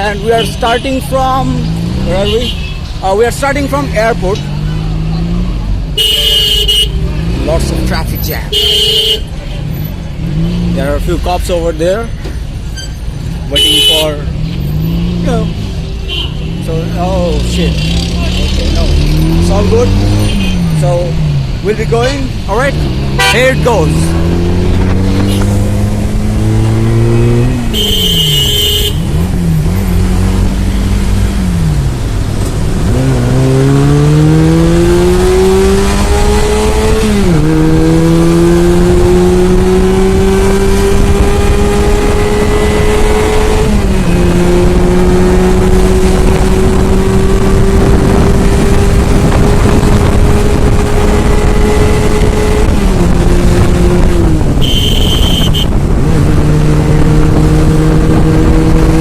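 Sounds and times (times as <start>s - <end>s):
horn honking: 2.2s - 3.0s, 6.0s - 7.1s, 8.4s - 9.4s, 12.8s - 14.2s, 15.9s - 16.6s, 20.0s - 20.8s, 23.0s - 24.2s, 26.3s - 29.8s, 54.5s - 55.8s
motorcycle engine accelerating: 22.5s - 27.9s, 29.0s - 59.0s.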